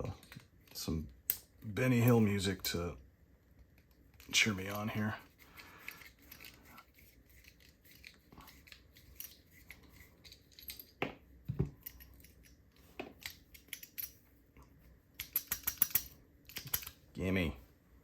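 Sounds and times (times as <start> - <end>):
padlock metallic clicks and scrapes: 5.2 - 11.0, 11.8 - 14.2, 15.2 - 17.0.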